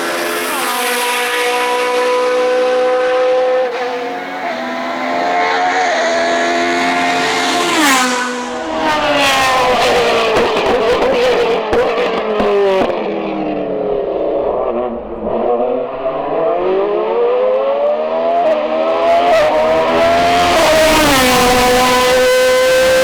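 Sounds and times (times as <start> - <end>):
race car engine: 0.0 - 23.0.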